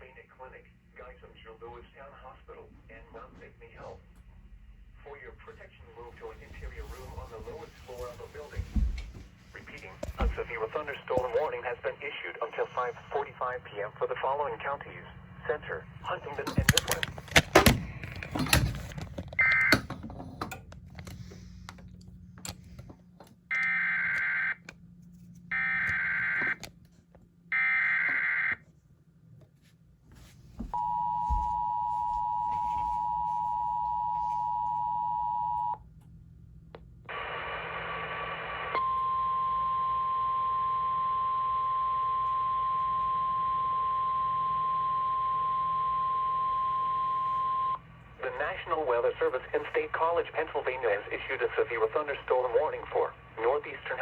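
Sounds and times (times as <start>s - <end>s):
clicks and crackles: 16.4s - 27.2s
steady alarm tone: 30.7s - 35.8s, 38.8s - 47.9s.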